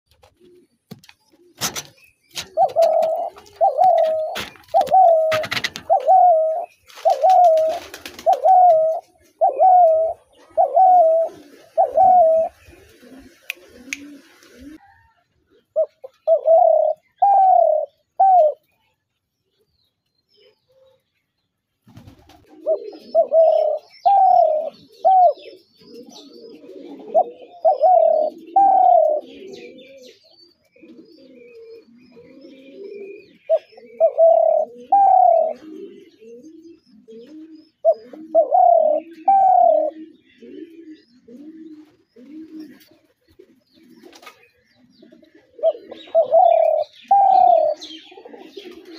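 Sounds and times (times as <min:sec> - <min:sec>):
doves cooing loudly: 0:00.1 - 0:14.9, 0:15.5 - 0:18.7, 0:22.0 - 0:48.9
softer lower dove coos: 0:00.1 - 0:18.8, 0:22.0 - 0:48.9.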